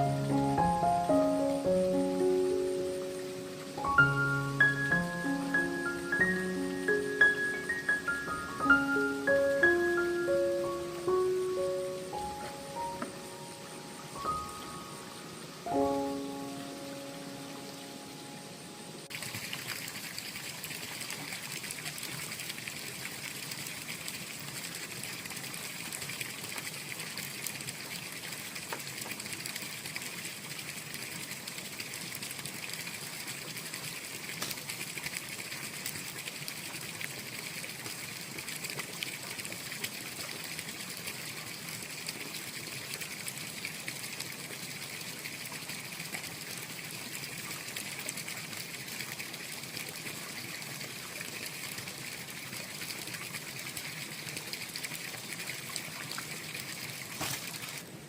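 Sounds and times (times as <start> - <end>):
water trickling: 0.0 - 58.0
faint splashes: 53.5 - 57.9.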